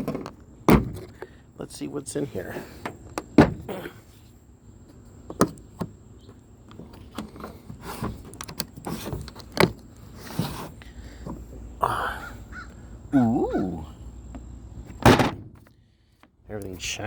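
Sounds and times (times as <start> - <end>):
scraping and rustling: 6.7 - 11.5.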